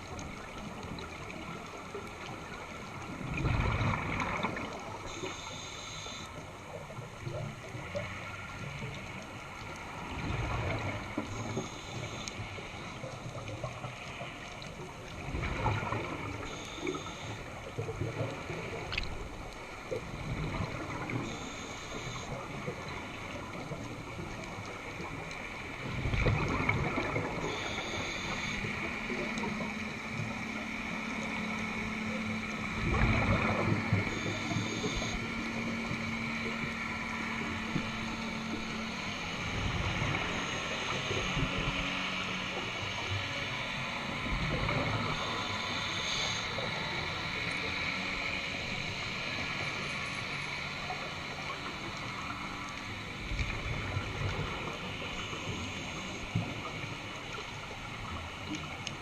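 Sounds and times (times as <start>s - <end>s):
exhaled bubbles rumbling: 0.0s - 5.2s, 6.8s - 30.4s, 31.2s - 41.9s
steady low hum: 0.0s - 59.0s
regulator inhale hiss: 5.0s - 6.4s, 11.3s - 12.5s, 16.4s - 17.5s, 21.2s - 22.4s, 27.4s - 28.7s.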